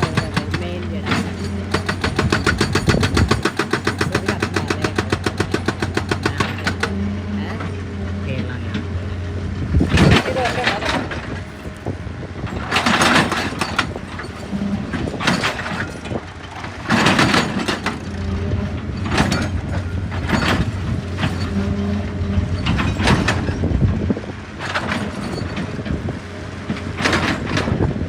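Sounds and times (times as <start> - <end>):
diesel engine running: 0.0 - 28.0.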